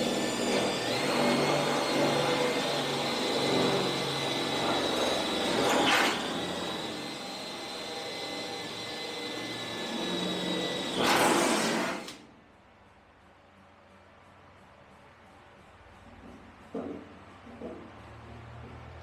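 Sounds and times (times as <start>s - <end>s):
power tool whining: 0.0s - 12.2s.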